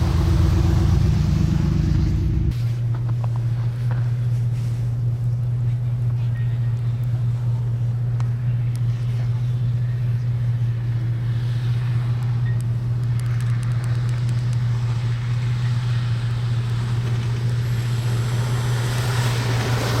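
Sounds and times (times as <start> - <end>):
motor vehicle engine droning: 0.0 - 20.0
hiss: 17.6 - 20.0.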